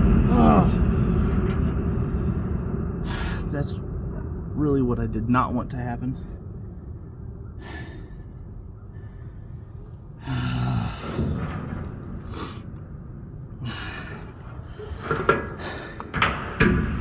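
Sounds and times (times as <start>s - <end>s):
wind rumble on microphone: 0.0s - 17.0s
man grunting: 0.3s - 1.0s
man breathing hard: 0.6s - 3.6s, 7.5s - 12.8s, 13.6s - 16.4s.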